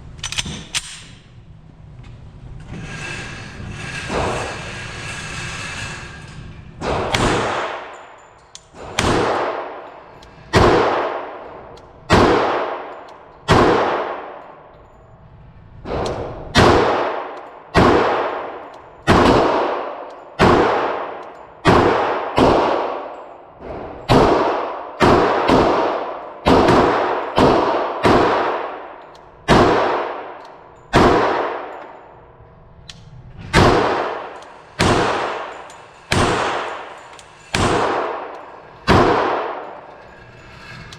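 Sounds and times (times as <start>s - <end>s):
pistol shots: 8.8s - 9.9s, 10.5s - 11.4s, 12.1s - 12.8s, 13.5s - 14.4s, 15.9s - 23.1s, 24.1s - 32.0s, 33.5s - 35.5s.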